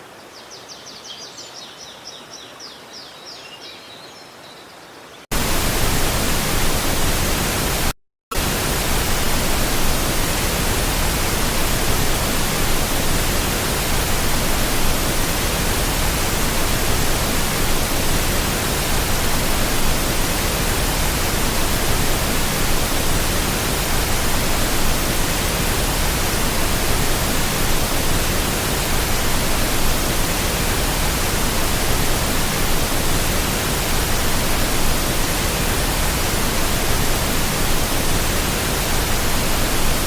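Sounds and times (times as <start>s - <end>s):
stream water rushing: 5.4s - 40.0s.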